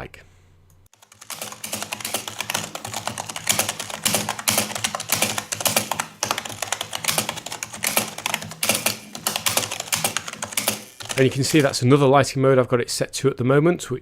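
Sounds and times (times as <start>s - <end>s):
fast typing on keyboard: 1.0s - 12.0s.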